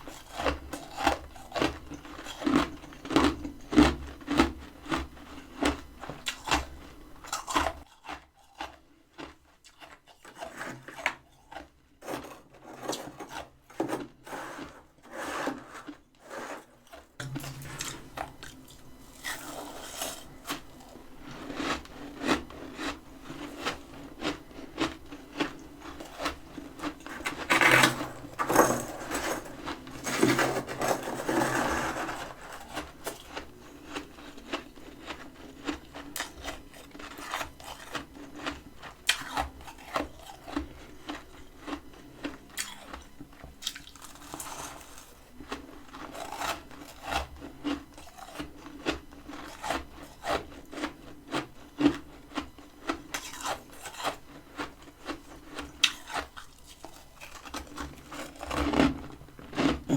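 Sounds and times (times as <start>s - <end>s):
frost being scraped: 12.0s - 18.2s, 26.8s - 33.4s.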